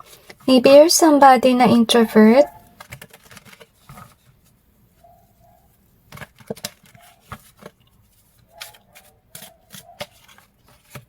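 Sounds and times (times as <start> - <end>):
cards clicking and tapping: 6.1 - 7.8.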